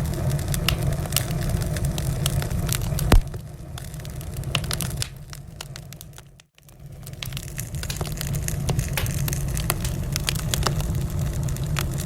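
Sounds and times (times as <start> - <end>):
low rumble of flames: 0.0 - 12.0
wood fire crackling: 0.0 - 12.0.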